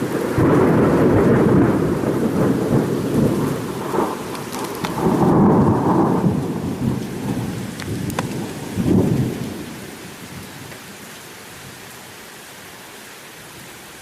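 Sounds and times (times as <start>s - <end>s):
thunder rumbling: 0.0s - 10.7s
steady rain: 0.0s - 14.0s.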